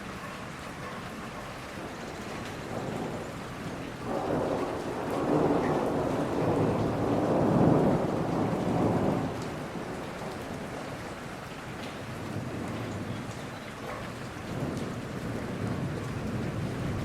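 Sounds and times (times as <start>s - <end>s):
rain falling in a forest: 0.0s - 17.0s
low thunder roll: 2.6s - 10.6s, 14.5s - 17.0s.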